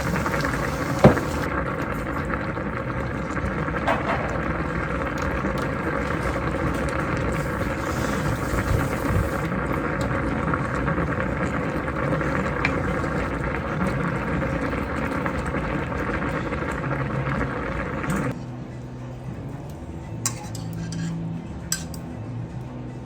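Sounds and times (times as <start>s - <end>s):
food simmering in a pan: 0.0s - 18.4s.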